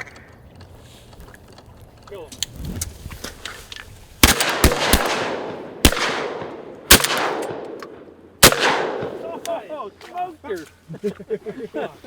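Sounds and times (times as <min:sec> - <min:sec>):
shotgun blasts with echo: 0:04.2 - 0:09.4.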